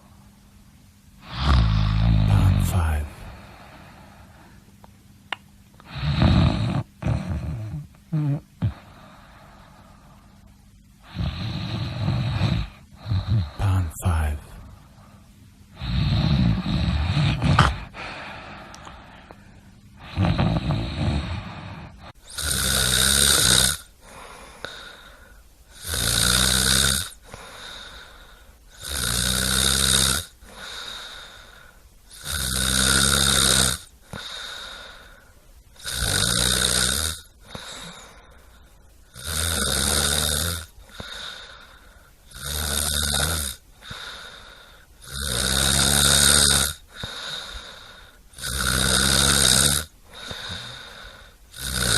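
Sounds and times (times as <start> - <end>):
quiet breaths: 0.0 - 5.0, 5.7 - 51.9
loud snoring: 1.2 - 3.1, 5.8 - 9.0, 11.0 - 13.8, 15.8 - 18.0, 20.0 - 25.1, 25.7 - 28.1, 28.7 - 35.0, 35.8 - 38.1, 39.1 - 51.9.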